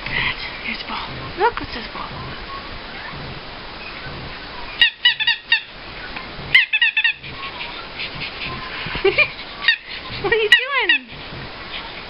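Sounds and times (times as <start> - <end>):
squeaky toy squeaking: 6.5 - 7.8, 9.6 - 11.1.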